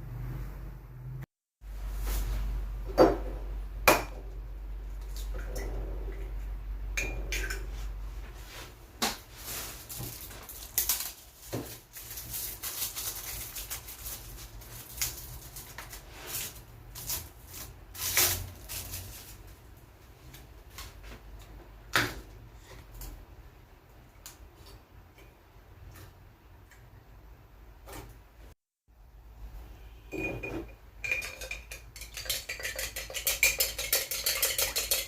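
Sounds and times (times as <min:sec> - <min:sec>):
dishes and utensils clinking: 0:30.1 - 0:35.0.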